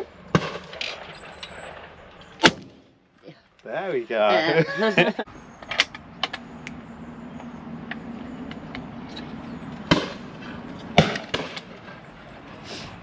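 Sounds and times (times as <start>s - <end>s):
sharp bangs: 0.0s - 3.0s, 9.8s - 11.9s.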